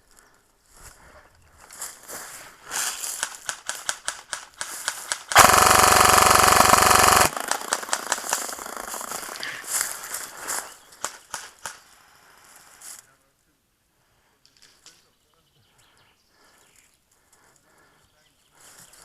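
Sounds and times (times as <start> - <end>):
airsoft gun full-auto burst: 5.3 - 9.5.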